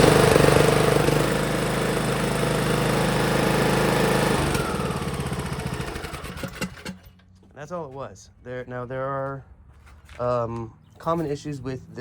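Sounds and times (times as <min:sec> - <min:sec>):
lawn tractor engine running: 0:00.0 - 0:07.5.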